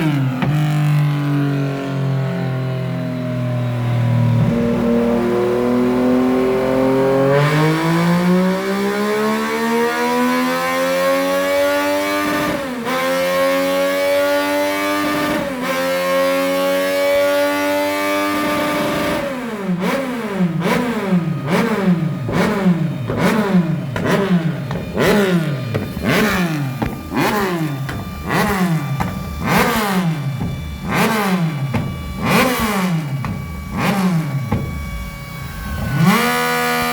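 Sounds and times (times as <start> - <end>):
motorcycle engine revving: 0.0 - 36.9
exhaust cracks: 19.1 - 36.9.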